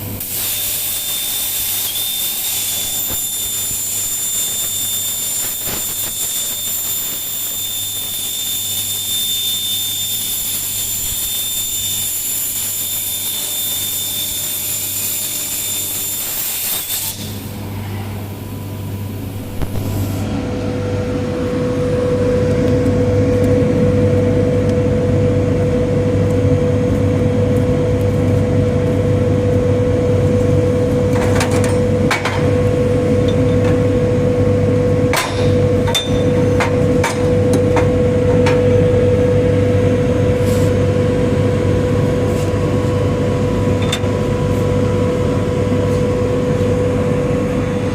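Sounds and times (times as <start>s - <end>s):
plasma cutting torch hissing: 0.2s - 17.6s.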